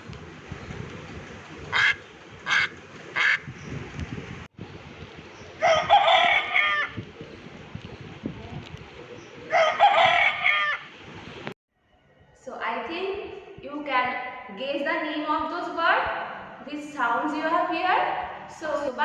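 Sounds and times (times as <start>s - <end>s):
rooster crowing: 5.6s - 7.0s, 9.5s - 10.9s.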